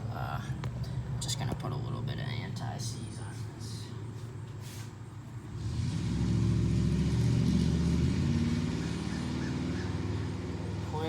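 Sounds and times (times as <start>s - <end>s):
vehicle engine running: 5.3s - 11.0s.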